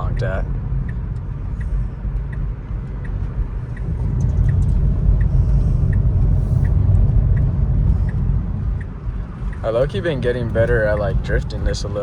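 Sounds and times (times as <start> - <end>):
road and wind noise in car: 0.0 - 12.0
turn signal clicking: 0.0 - 12.0.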